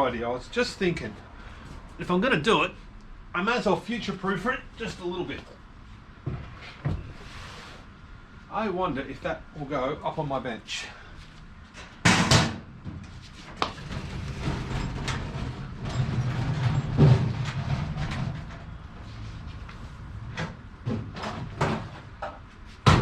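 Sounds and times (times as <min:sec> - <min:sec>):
heavy load banging on bench: 0:12.0 - 0:12.8
rumbling and scraping on bench: 0:12.8 - 0:22.2.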